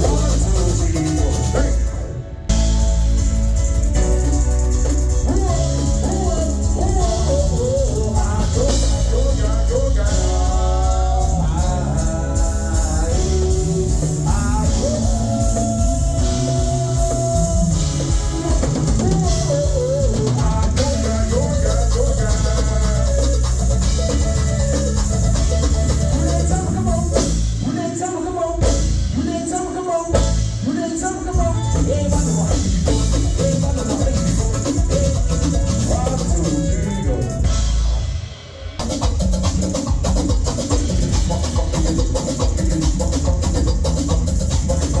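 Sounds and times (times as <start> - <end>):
lead singer singing: 0.0 - 2.5, 4.8 - 37.8
steady low backing: 0.0 - 29.4
guitar: 0.0 - 45.0
live band playing: 0.0 - 45.0.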